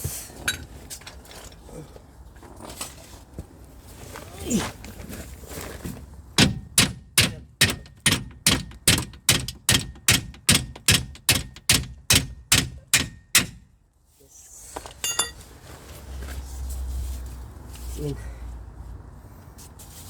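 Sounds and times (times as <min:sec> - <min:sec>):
hammer striking metal: 0:06.4 - 0:13.7, 0:15.0 - 0:15.4
light metallic clinks: 0:15.0 - 0:15.4.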